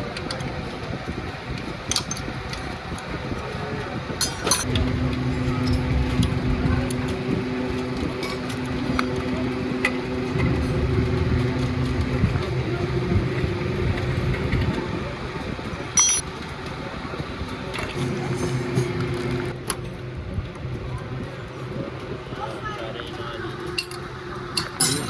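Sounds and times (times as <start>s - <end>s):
motor humming: 4.6s - 16.5s, 17.6s - 25.0s
metal clinks and taps: 16.0s - 16.2s, 23.8s - 25.0s.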